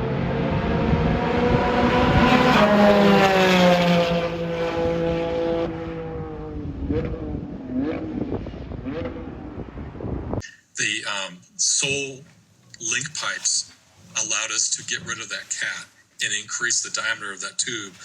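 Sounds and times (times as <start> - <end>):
sports car engine revving: 0.0 - 10.3.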